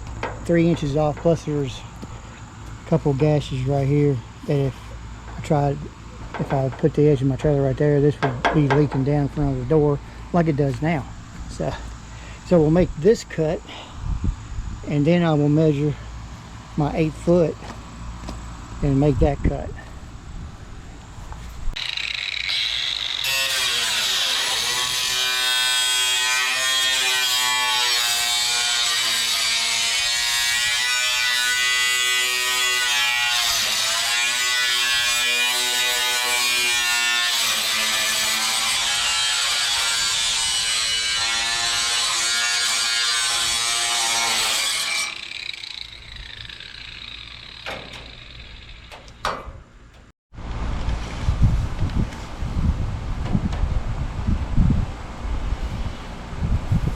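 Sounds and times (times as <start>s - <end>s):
power tool cutting sheet metal: 21.8s - 49.6s.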